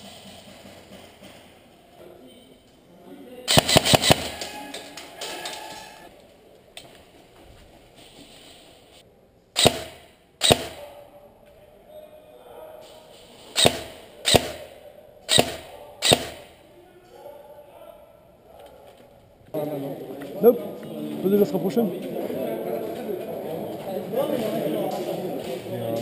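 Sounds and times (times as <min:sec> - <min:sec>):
airsoft gun shots: 0:03.5 - 0:04.6, 0:09.6 - 0:10.8, 0:13.6 - 0:16.6.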